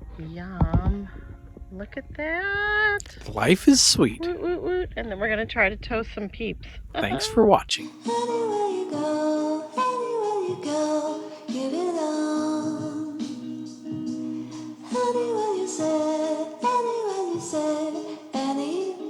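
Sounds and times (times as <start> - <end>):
woman singing a song: 0.2 - 1.2, 7.8 - 19.0.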